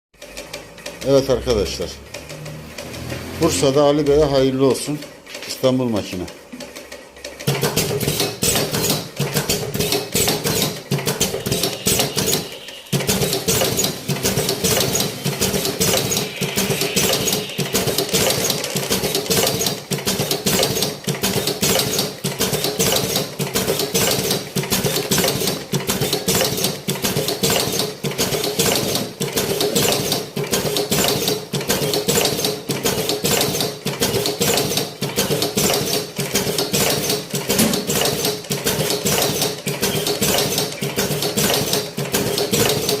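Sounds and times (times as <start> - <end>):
machine clattering clicks: 0.2 - 1.4, 2.0 - 43.0
machine hum: 0.2 - 5.5, 6.2 - 27.8.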